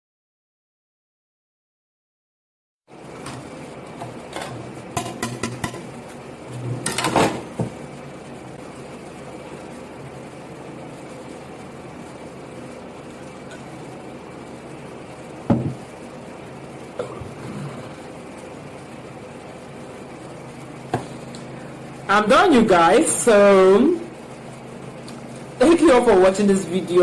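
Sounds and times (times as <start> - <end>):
steady room hum: 2.9 - 27.0
knock: 15.5 - 15.8.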